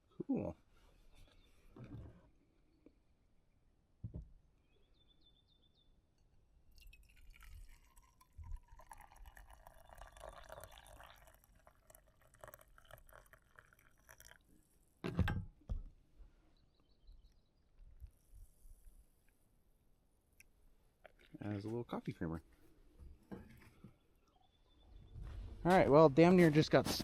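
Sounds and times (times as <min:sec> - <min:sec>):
coffee pouring into a cup: 0:06.7 - 0:14.8.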